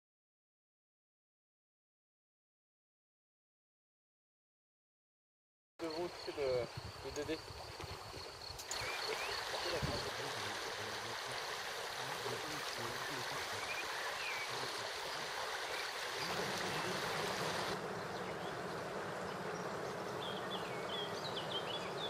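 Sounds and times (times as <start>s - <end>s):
stream water running: 5.8s - 22.0s.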